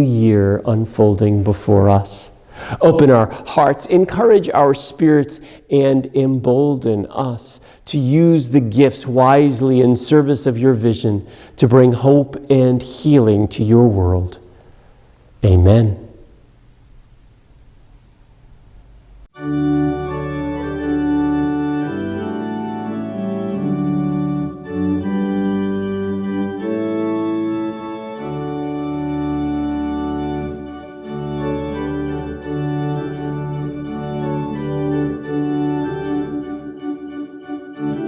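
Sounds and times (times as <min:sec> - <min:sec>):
organ playing sustained chords: 0:00.0 - 0:04.9, 0:19.3 - 0:38.0.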